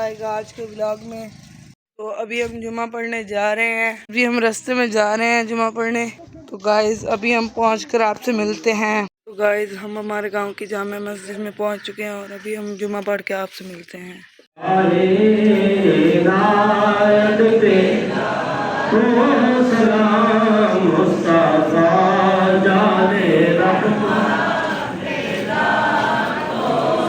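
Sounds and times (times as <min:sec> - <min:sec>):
man chanting: 0:14.6 - 0:18.1, 0:18.9 - 0:24.6.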